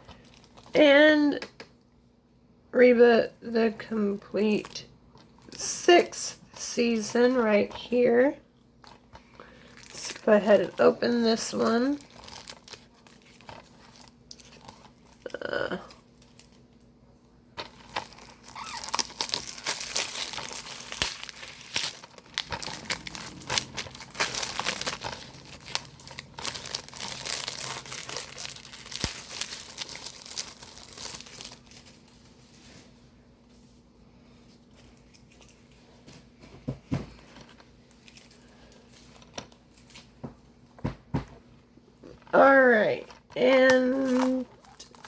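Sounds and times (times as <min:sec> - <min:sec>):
plastic shrink-wrap crackling: 0:08.8 - 0:16.8, 0:17.6 - 0:32.5, 0:42.2 - 0:45.0.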